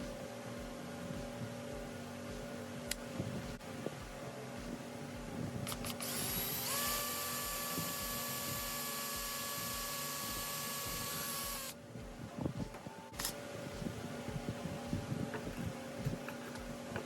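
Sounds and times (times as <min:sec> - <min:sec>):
small power tool motor whine: 0:05.7 - 0:11.8.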